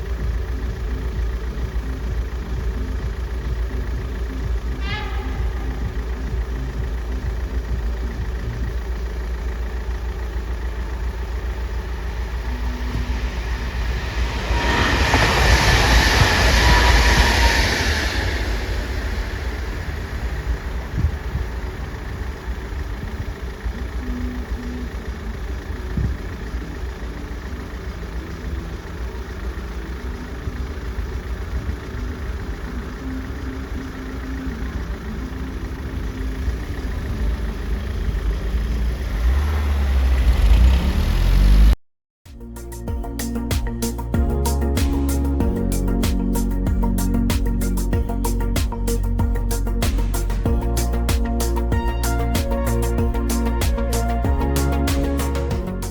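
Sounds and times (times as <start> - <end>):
train rumbling past: 4.2 - 8.0, 11.9 - 22.6, 42.3 - 55.9.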